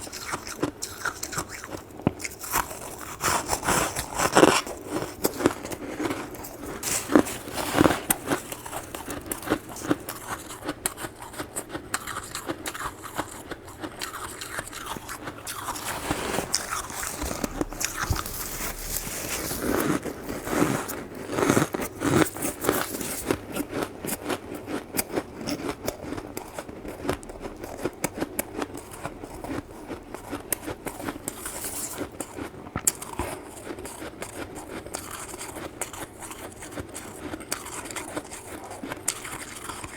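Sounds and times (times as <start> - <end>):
chewing crunchy frost: 0.0 - 39.9.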